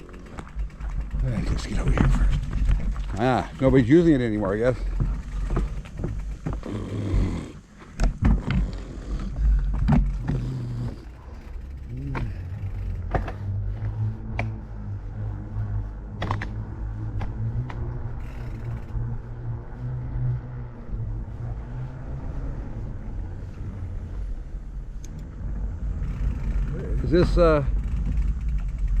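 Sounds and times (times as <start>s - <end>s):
wheels knocking on wooden planks: 0.0s - 14.6s, 26.1s - 29.0s
bicycle tires rumbling on boardwalk: 0.0s - 29.0s.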